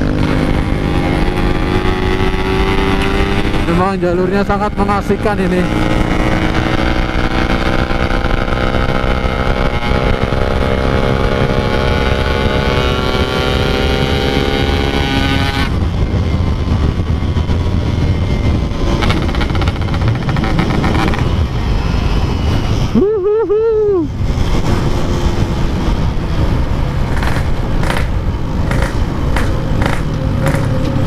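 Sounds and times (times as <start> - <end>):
two-stroke motorcycle engine: 27.0 - 31.0.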